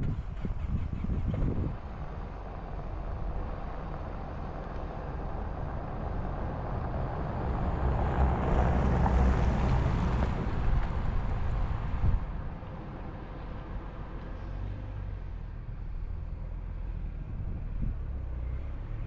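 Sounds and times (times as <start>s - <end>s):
wind noise: 0.0s - 4.2s, 5.2s - 13.3s, 17.2s - 18.3s
road rumble: 0.0s - 19.0s.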